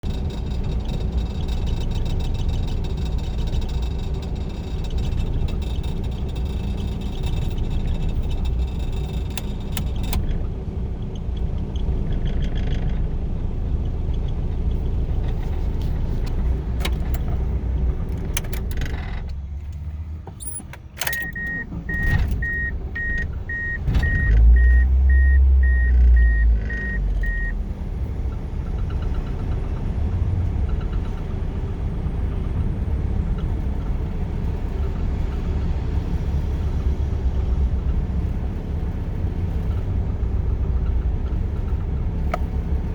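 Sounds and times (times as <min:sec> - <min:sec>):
car engine rough idle: 0:00.0 - 0:19.7
car warning chime beeping: 0:20.4 - 0:27.6.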